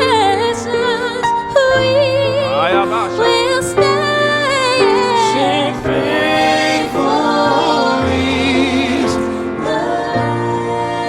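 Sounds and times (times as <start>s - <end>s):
keyboard chords: 0.0s - 11.0s
voices singing gospel: 0.0s - 11.0s.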